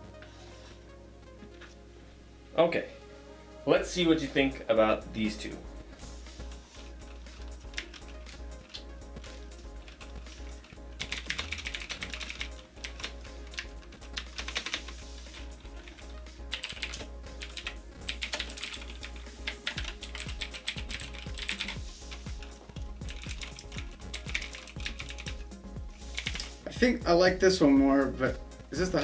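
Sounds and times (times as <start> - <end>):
background music: 0.0 - 29.0
clicky mechanical keyboard typing: 7.1 - 25.4.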